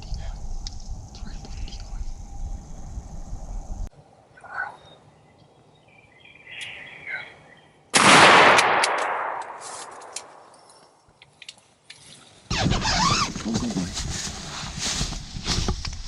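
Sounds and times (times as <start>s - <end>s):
shotgun blast: 8.0s - 10.4s.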